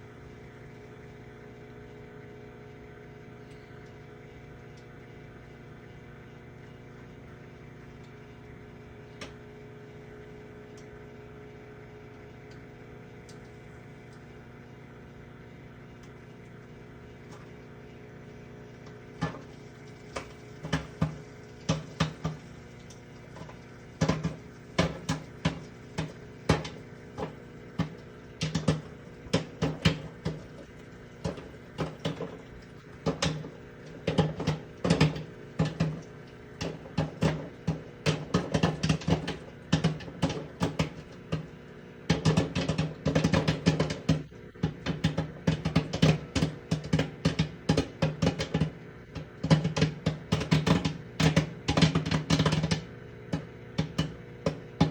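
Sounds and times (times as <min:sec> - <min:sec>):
appliance humming: 0:00.0 - 0:54.9
popcorn kernels popping: 0:16.0 - 0:54.9.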